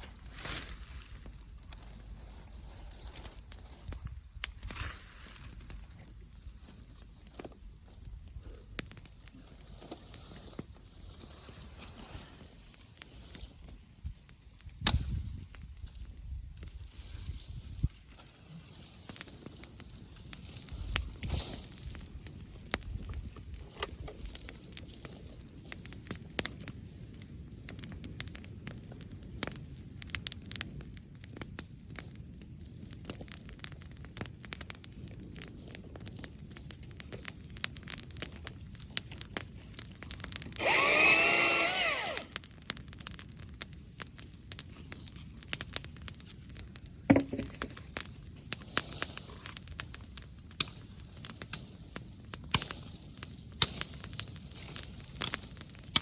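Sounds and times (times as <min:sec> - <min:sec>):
wood bonfire crackling: 0:00.0 - 0:56.0.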